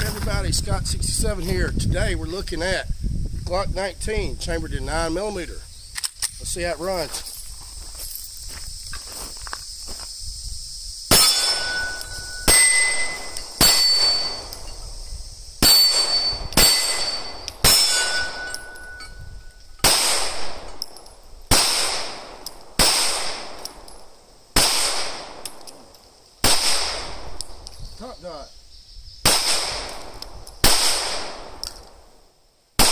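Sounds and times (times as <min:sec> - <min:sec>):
pistol shots with ringing tail: 0:11.1 - 0:14.8, 0:15.6 - 0:25.8, 0:26.4 - 0:27.6, 0:29.2 - 0:32.0.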